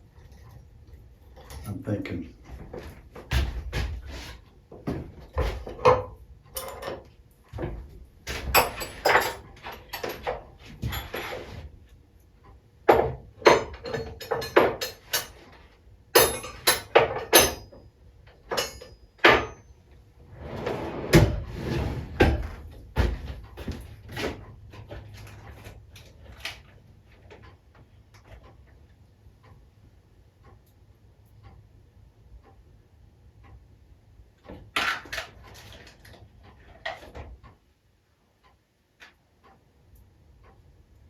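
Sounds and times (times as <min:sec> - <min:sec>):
metal tools clinking on workbench: 0:08.6 - 0:11.4, 0:13.4 - 0:15.4, 0:16.2 - 0:17.8, 0:18.5 - 0:19.7.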